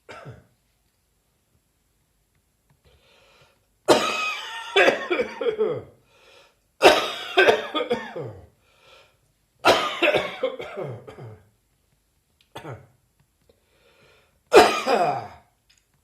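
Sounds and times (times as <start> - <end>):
person coughing: 0.0 - 0.5, 3.9 - 6.0, 6.8 - 8.5, 9.6 - 11.5, 12.6 - 12.9, 14.5 - 15.5
person breathing: 2.8 - 3.7, 6.0 - 6.6, 8.6 - 9.2, 13.5 - 14.5.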